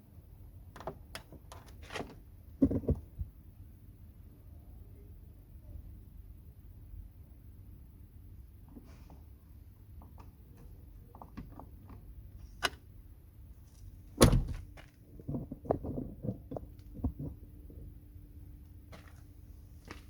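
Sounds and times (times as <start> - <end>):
car door lock clicks: 14.2 - 14.6
knocks on car door parts: 14.2 - 14.7.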